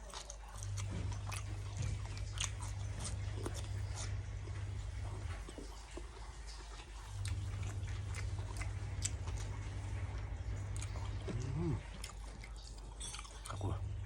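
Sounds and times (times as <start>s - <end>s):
person chewing with wet smacks: 0.0s - 14.0s
steady low rumble: 0.6s - 12.8s.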